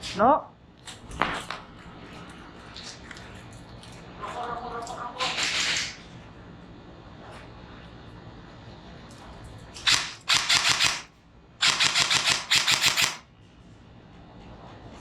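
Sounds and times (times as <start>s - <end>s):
airsoft gun shots: 9.8s - 13.3s.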